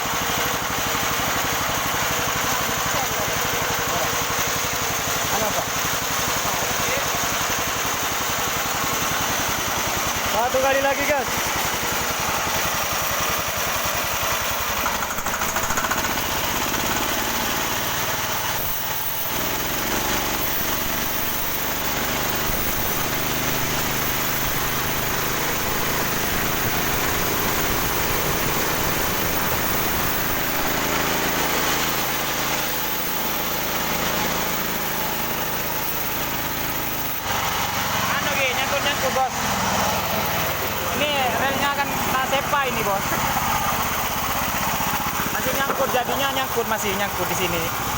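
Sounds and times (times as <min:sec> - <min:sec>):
sawmill engine running: 0:00.0 - 0:47.9.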